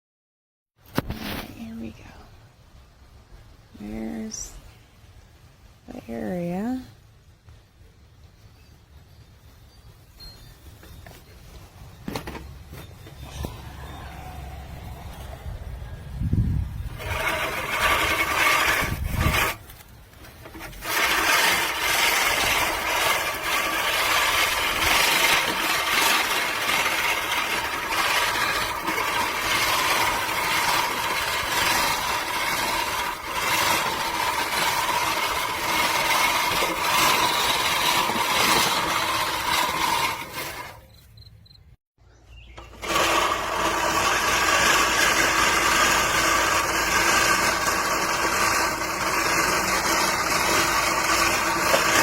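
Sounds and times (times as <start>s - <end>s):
push reel mower cutting grass: 12.1s - 41.2s, 42.5s - 52.0s.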